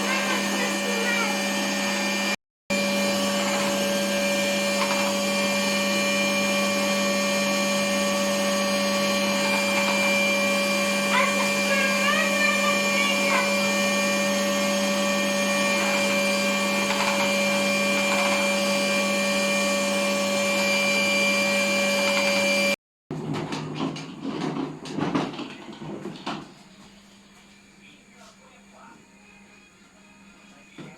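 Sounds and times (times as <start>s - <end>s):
vacuum cleaner running: 0.0s - 29.0s
knocks and clatter: 23.1s - 26.6s.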